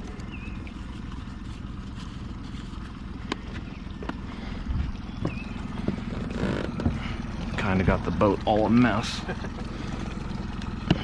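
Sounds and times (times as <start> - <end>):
boat motor idling: 0.0 - 11.0
knocks and clatters of gear: 4.8 - 7.1.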